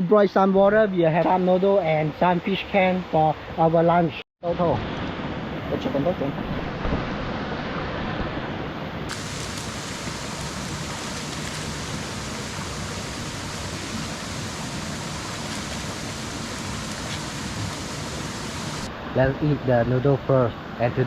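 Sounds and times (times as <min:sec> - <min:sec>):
running water rushing: 0:05.7 - 0:19.8.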